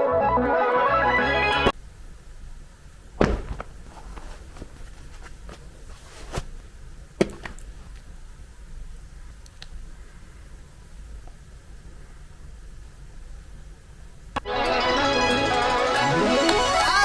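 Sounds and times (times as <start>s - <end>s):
low steady background noise: 0.0s - 17.0s.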